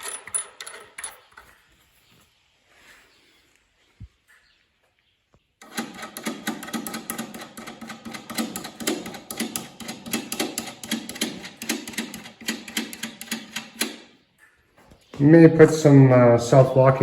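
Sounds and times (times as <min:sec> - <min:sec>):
tool clicking and rattling: 0:00.0 - 0:01.7, 0:05.6 - 0:14.2.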